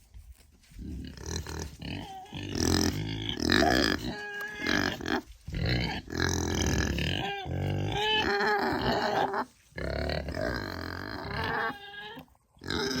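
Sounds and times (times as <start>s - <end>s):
pigs grunting: 0.8s - 13.0s.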